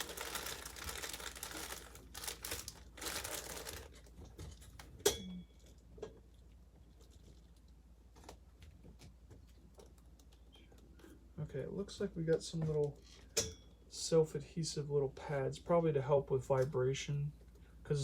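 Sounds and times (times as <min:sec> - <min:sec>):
packaging crinkling and tearing: 0:00.0 - 0:04.9.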